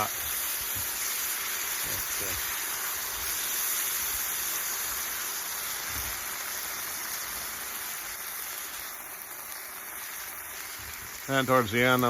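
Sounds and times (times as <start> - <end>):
food sizzling in a pan: 0.0 - 12.0.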